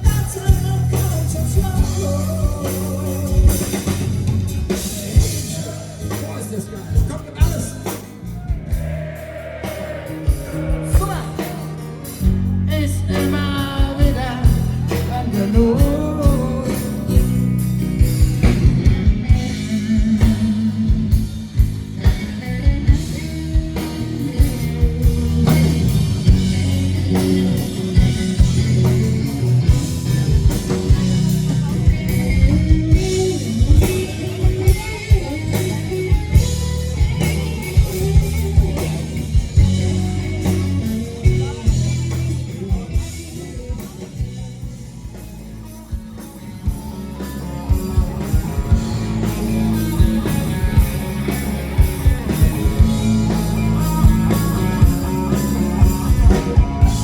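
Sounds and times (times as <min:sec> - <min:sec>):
electric guitar: 0:00.0 - 0:57.0
person singing: 0:08.8 - 0:17.6, 0:46.1 - 0:57.0.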